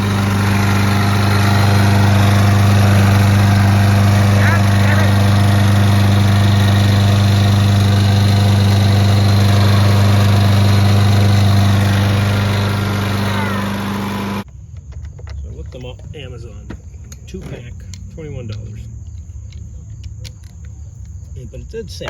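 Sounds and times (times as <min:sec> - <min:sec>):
lawn mower engine running: 0:00.0 - 0:14.5.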